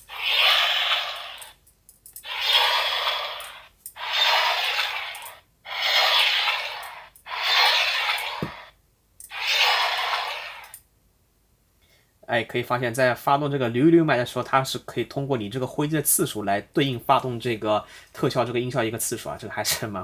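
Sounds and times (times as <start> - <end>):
toy sword whoosh effect: 0.0 - 1.6, 2.2 - 10.8.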